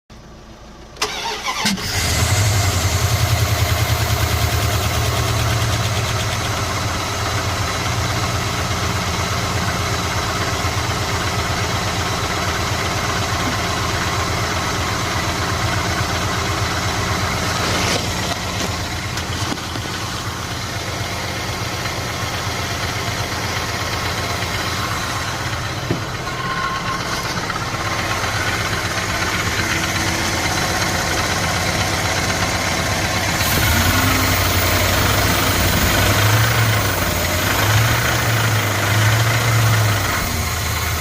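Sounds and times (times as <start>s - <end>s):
car engine starting and idling: 0.1s - 41.0s
repeating engine knock: 21.6s - 37.8s.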